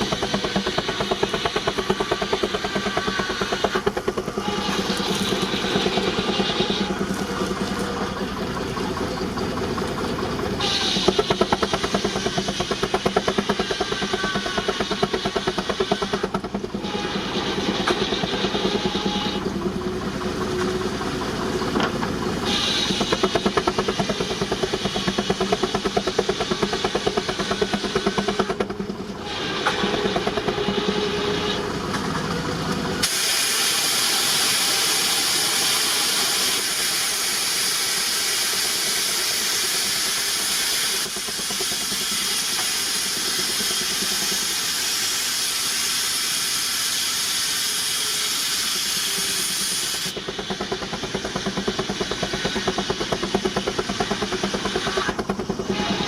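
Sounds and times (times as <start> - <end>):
steam engine exhaust beats: 0.0 - 56.0
escaping steam hiss: 32.9 - 56.0.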